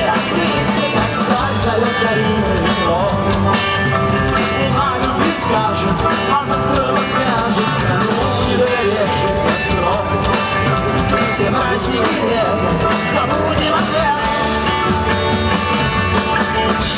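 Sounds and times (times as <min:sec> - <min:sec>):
person singing: 0:00.0 - 0:15.2
rock and roll song: 0:00.0 - 0:16.9.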